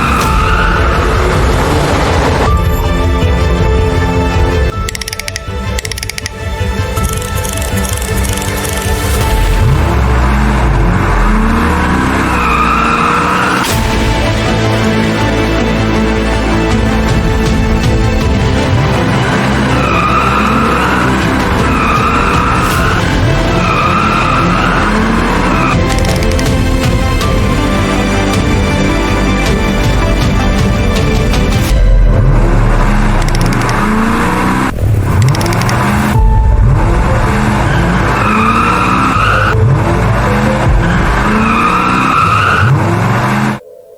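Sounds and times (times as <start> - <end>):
car tyres screeching: 0.0 - 3.0, 4.9 - 13.8, 18.7 - 26.8, 32.3 - 43.6
background music: 0.0 - 43.9.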